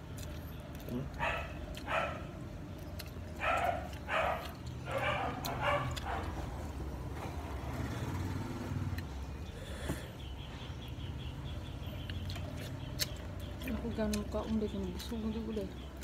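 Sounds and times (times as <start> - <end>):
dog barking: 1.1 - 2.4, 3.4 - 6.5.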